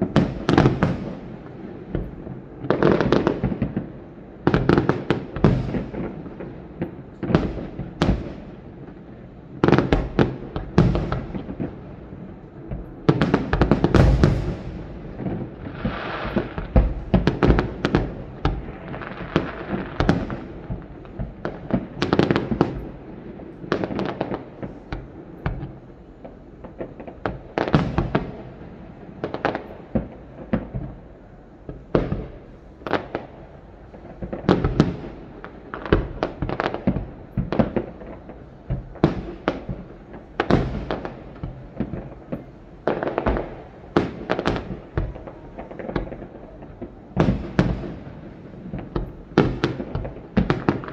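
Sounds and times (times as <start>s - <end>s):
fireworks bangs: 0.0s - 28.6s, 31.7s - 50.9s
low rumble: 14.0s - 15.2s.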